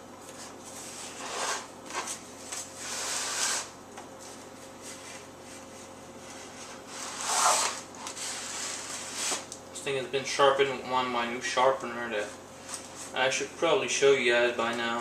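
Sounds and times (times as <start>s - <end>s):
knife cutting packaging: 7.0s - 9.5s.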